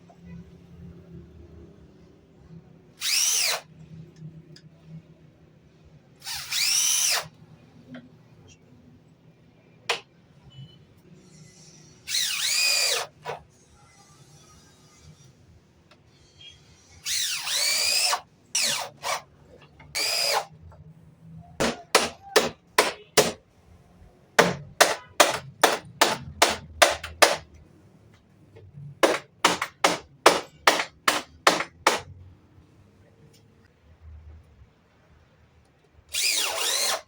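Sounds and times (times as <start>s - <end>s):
power tool working wood: 36.2s - 37.0s.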